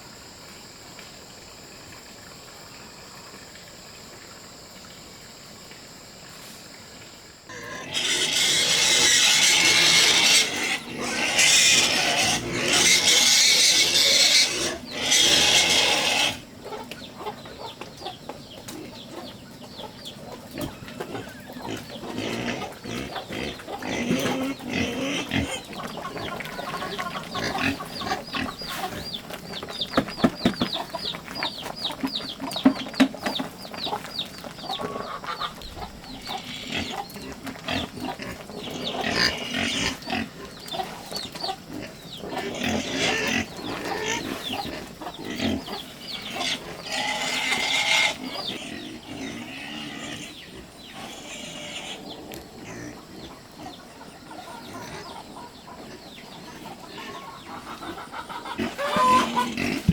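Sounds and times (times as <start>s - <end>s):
pigs squealing: 7.5s - 16.8s, 20.6s - 29.1s, 34.7s - 55.4s, 56.5s - 59.9s
pigs grunting and snuffling: 7.5s - 59.9s.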